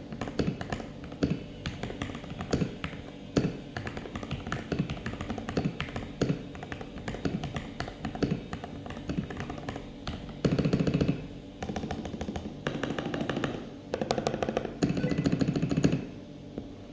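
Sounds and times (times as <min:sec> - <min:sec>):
mechanical keyboard typing: 0:03.8 - 0:09.8.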